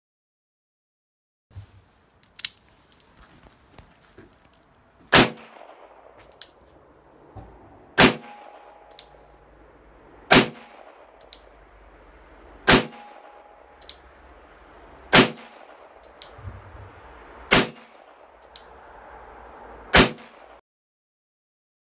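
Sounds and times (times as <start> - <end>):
revolver gunshots with ringing tail: 5.1 - 18.4, 19.9 - 20.6.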